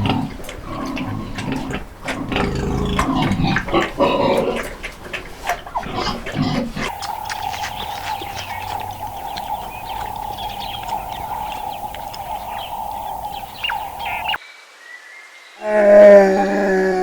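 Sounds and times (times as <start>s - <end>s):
steady droning tone: 6.9s - 14.4s
short bird chirps: 6.9s - 15.2s.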